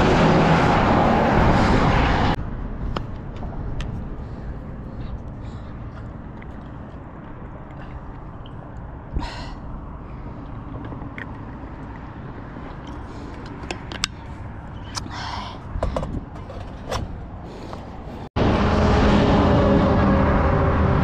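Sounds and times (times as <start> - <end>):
wind on microphone: 0.0 - 4.5
road rumble: 0.0 - 21.0.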